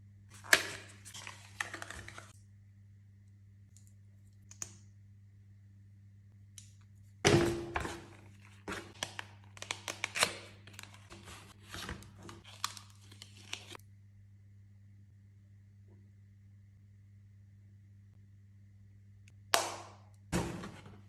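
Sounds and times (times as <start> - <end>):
packaging crinkling: 8.3 - 13.8
packaging ripping: 8.8 - 13.8.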